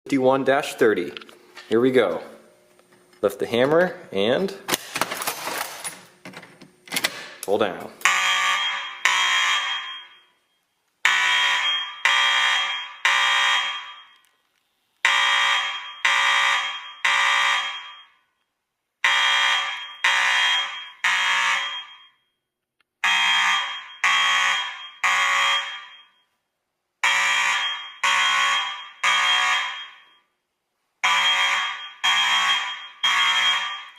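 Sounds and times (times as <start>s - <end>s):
fire alarm blasts: 8.0s - 14.3s, 15.0s - 18.4s, 19.0s - 22.4s, 23.0s - 26.4s, 27.0s - 30.4s, 31.0s - 33.9s.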